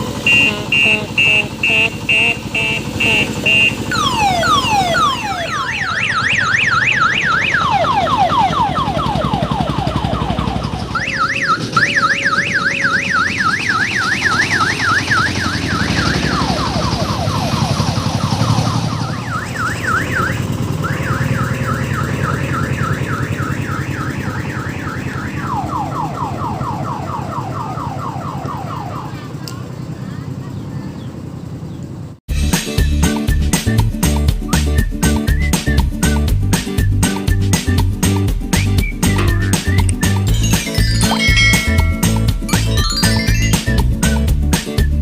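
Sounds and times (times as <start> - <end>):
diesel engine running: 0.0 - 25.6
electronic warbling siren: 0.2 - 29.1, 39.0 - 43.9.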